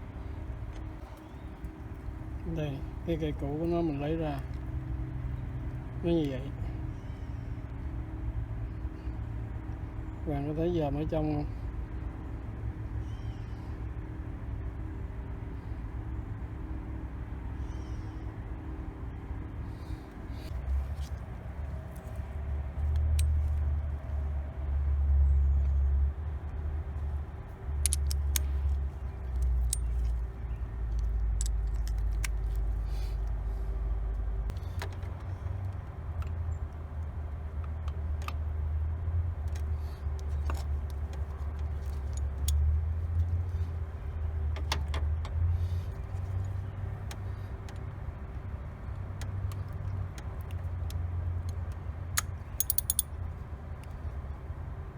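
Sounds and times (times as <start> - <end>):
metallic clinks of hand tools: 52.6 - 53.1.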